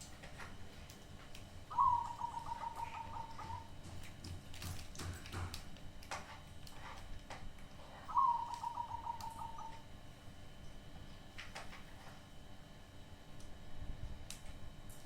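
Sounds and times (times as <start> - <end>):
dove cooing: 1.7 - 3.8, 7.8 - 9.8.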